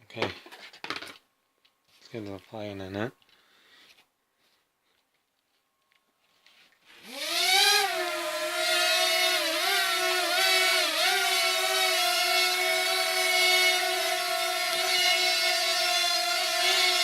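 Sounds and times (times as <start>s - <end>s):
drone propellers whining: 7.0s - 17.0s.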